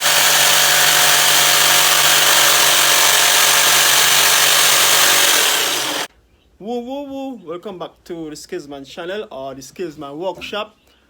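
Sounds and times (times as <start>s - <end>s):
electric jigsaw running: 0.0s - 6.1s.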